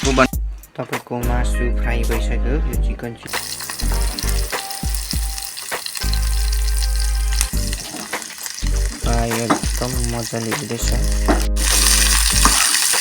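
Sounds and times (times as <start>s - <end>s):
chicken sizzling in hot oil: 3.2s - 13.0s
sharp knocks of stirring: 8.9s - 10.0s.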